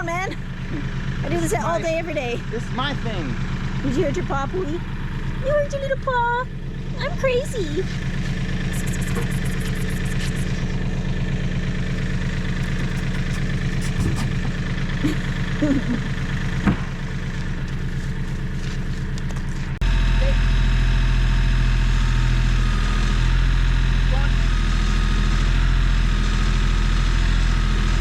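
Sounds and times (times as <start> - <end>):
generator engine running: 0.0 - 20.1.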